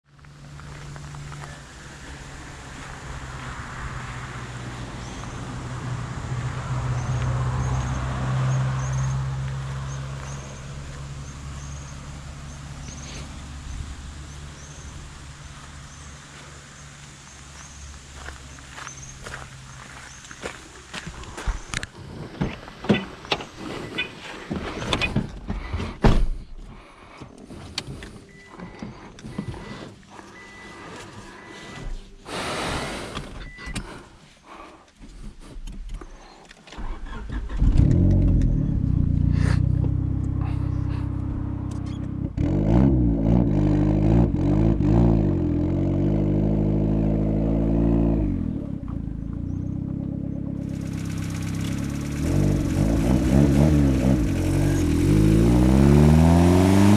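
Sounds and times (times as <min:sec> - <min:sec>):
car engine starting and revving: 0:00.2 - 0:22.2, 0:36.7 - 0:56.9.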